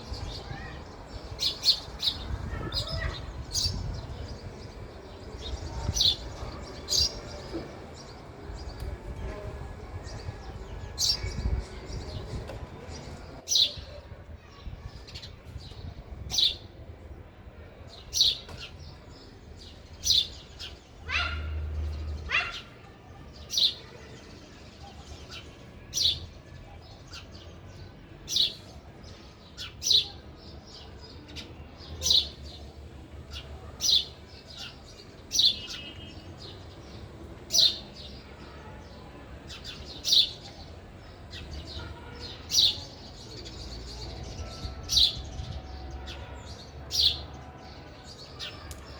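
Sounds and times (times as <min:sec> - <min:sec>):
sparrow chirping: 0:00.0 - 0:13.8, 0:18.2 - 0:22.8, 0:29.6 - 0:38.6, 0:39.4 - 0:47.2.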